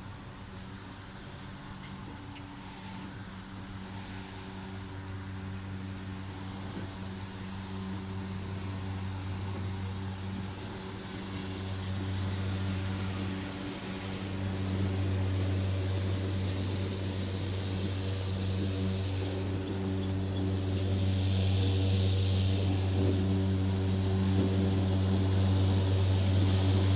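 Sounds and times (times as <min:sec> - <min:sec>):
lawn mower engine running: 0:05.7 - 0:26.9
grass cutting hiss: 0:05.8 - 0:26.9.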